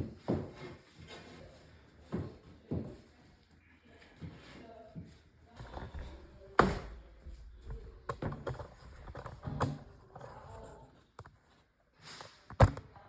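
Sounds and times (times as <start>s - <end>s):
wooden slats knocking: 6.6s - 7.1s.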